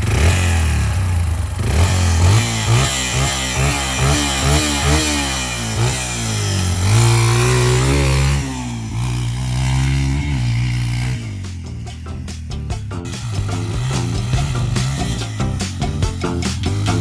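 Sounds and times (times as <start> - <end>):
dirt bike engine revving: 0.0 - 17.0.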